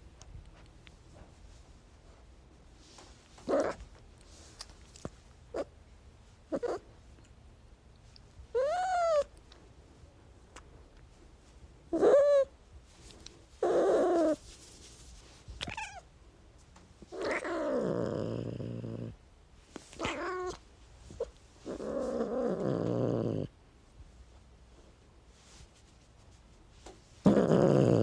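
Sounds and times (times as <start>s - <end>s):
cat meowing and growling: 8.6s - 9.3s, 17.1s - 19.1s, 20.0s - 20.6s.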